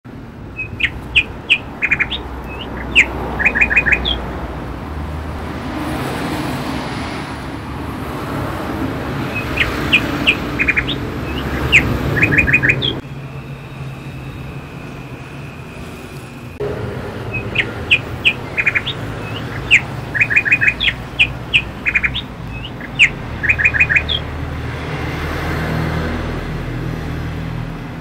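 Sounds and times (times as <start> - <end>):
steady rushing background: 0.1 - 25.0
songbird chirping and whistling: 0.5 - 4.2, 9.2 - 13.0, 17.3 - 24.2.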